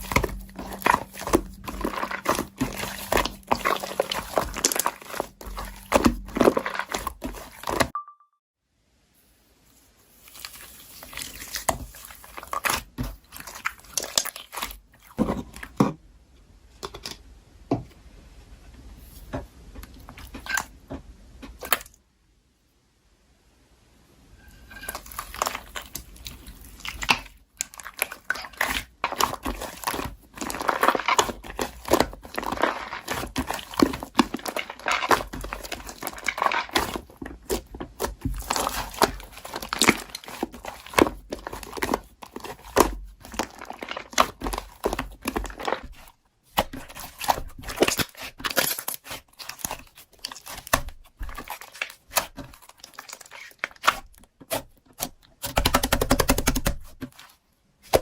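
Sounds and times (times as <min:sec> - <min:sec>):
slime crackling and popping: 0:00.0 - 0:07.9, 0:24.8 - 0:56.8.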